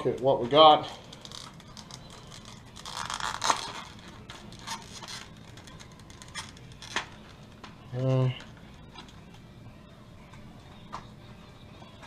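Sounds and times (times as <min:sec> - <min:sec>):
packaging tearing: 0:01.1 - 0:07.1.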